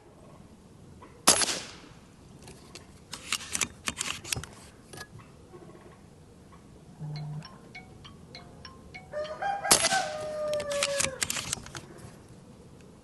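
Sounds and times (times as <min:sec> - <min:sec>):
air rifle shot: 0:01.3 - 0:01.8, 0:09.7 - 0:10.2.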